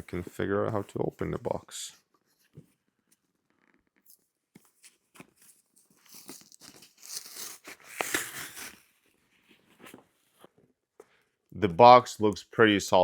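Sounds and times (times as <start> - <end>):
packaging tearing and crinkling: 5.4 - 9.0.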